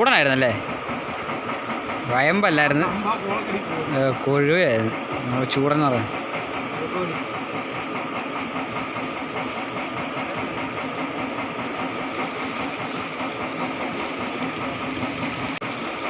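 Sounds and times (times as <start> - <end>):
water pump motor humming: 0.0 - 16.0.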